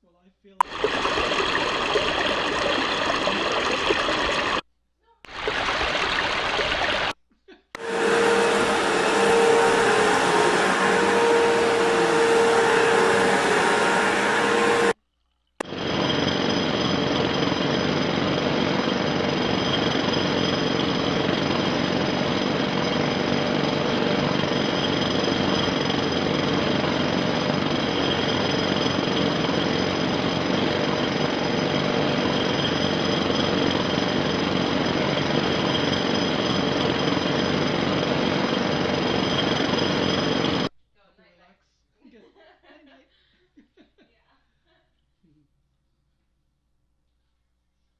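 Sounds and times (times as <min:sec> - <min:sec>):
steady electronic tones: 0:07.8 - 0:15.0.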